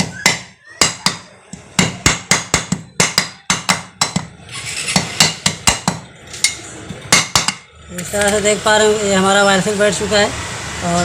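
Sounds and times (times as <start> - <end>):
hammer tapping metal: 0.0 - 4.4, 5.0 - 7.7.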